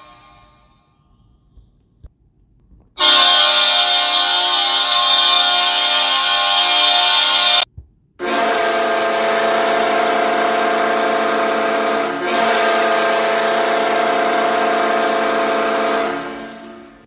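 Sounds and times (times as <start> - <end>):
hockey goal horn: 3.0 - 7.6, 8.2 - 17.0.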